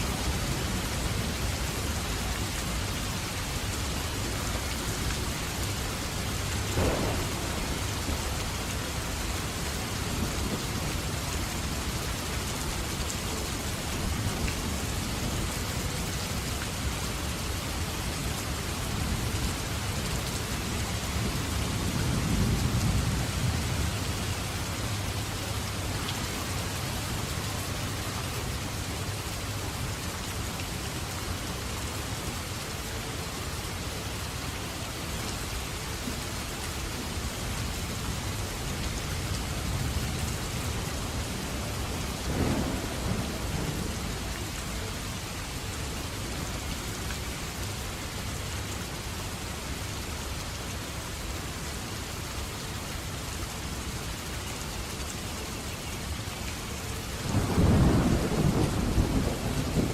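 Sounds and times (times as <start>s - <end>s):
steady rain falling: 0.0s - 59.9s
low rolls of thunder: 6.5s - 11.2s, 39.6s - 45.1s, 57.2s - 59.9s.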